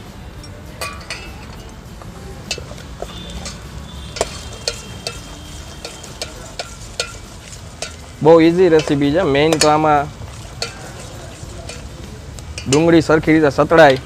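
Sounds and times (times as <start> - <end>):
onions frying in oil: 1.1 - 14.0
utensil scraping a pan: 2.4 - 13.0.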